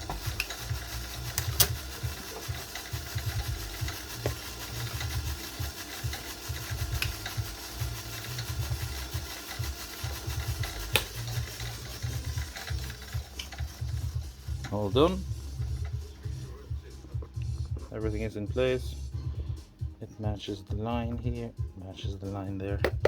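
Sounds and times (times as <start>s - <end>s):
stitching machine running: 0.0s - 17.0s.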